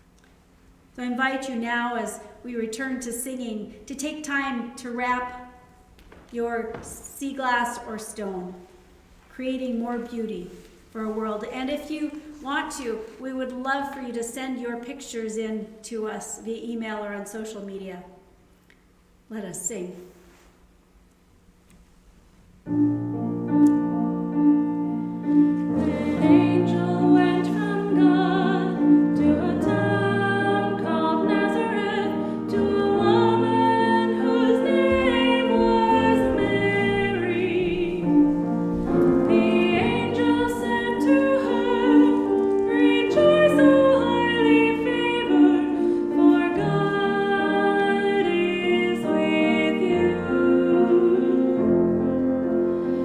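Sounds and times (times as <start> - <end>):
piano accompaniment: 22.6 - 53.0
voices singing worship song: 25.7 - 38.2, 38.9 - 51.8.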